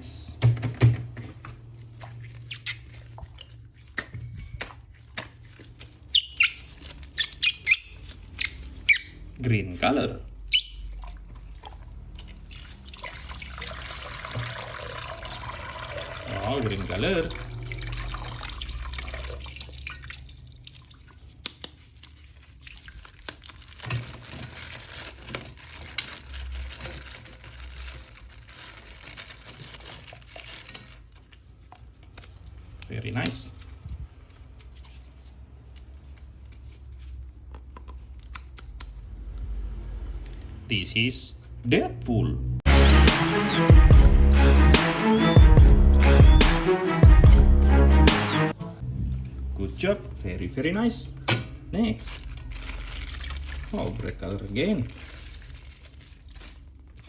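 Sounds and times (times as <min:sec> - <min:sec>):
plastic toys and packaging handled: 0:00.8 - 0:40.5, 0:49.0 - 0:57.0
short high squeaks: 0:06.1 - 0:09.2
water running and dripping: 0:10.9 - 0:23.4.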